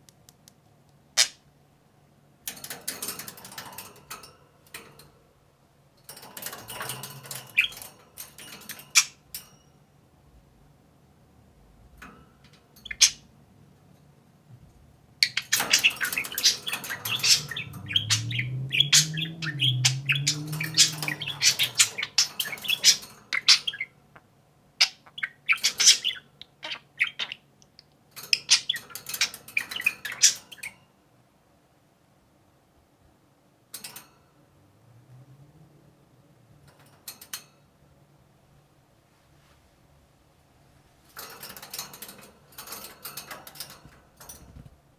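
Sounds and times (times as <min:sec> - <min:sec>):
budgerigars chirping and warbling: 0:01.2 - 0:01.4, 0:06.8 - 0:07.9, 0:12.8 - 0:13.3, 0:15.2 - 0:30.8.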